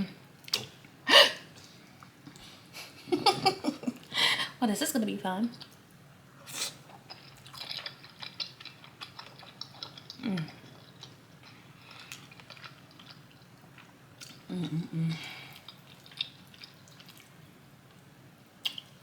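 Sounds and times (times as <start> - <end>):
chewing noodles: 6.8 - 14.5, 15.5 - 17.4
person humming mm: 14.5 - 15.3.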